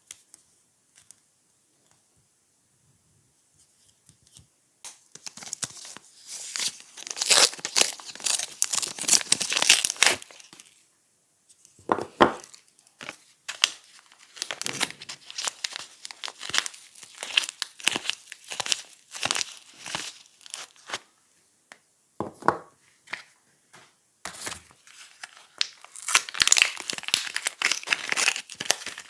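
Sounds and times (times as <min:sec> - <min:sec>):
packaging crinkling and tearing: 0:04.9 - 0:10.8, 0:12.4 - 0:21.0, 0:24.4 - 0:29.0.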